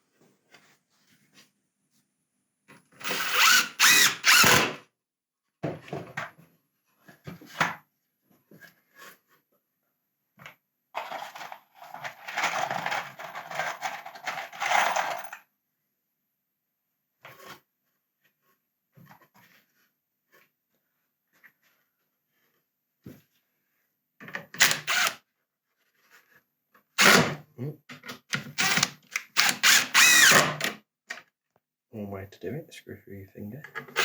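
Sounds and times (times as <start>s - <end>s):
impact driver driving screws: 3.0s - 4.8s, 24.6s - 25.2s, 27.0s - 27.4s, 28.2s - 30.8s.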